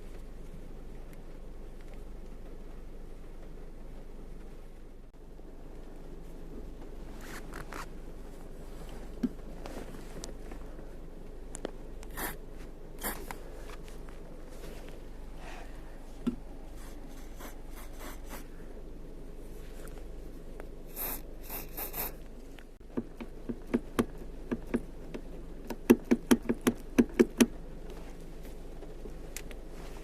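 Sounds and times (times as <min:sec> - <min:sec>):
aerosol spray hissing: 0:12.1 - 0:12.4, 0:13.0 - 0:13.2, 0:17.2 - 0:18.5, 0:20.9 - 0:22.2
sharp clicks and knocks: 0:22.9 - 0:27.6.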